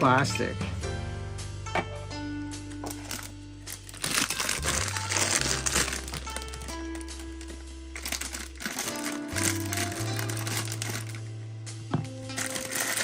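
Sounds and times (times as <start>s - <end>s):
background music: 0.0s - 13.0s
plastic packaging crinkling: 2.9s - 11.2s, 12.3s - 13.0s.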